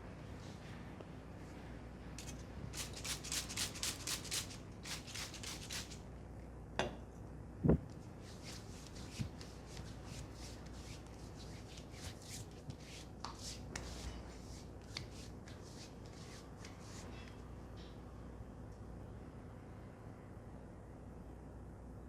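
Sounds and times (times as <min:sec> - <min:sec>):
hands rubbing through hair: 0:08.2 - 0:17.1.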